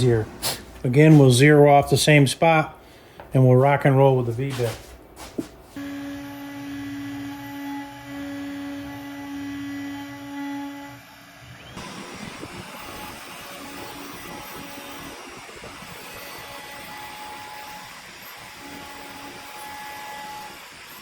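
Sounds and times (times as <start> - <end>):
router carving wood: 5.8 - 21.0.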